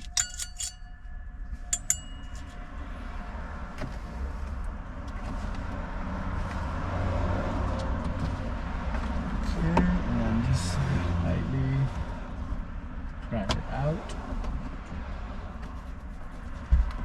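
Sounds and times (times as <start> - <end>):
metal screws clinking: 0.0 - 1.0, 1.6 - 2.6.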